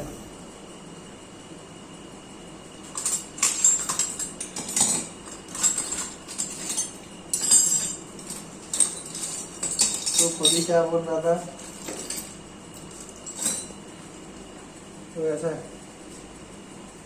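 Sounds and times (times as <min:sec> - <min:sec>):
metal objects clinking: 0:02.9 - 0:10.9, 0:11.5 - 0:13.8.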